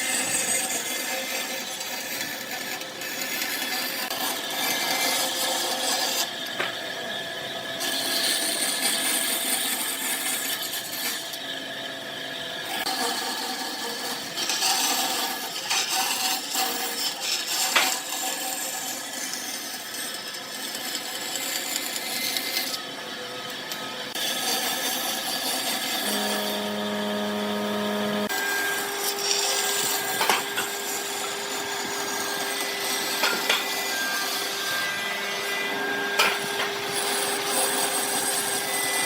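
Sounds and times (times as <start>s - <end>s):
turning tool scraping wood: 24.3s - 39.0s
wood lathe humming: 24.4s - 39.0s.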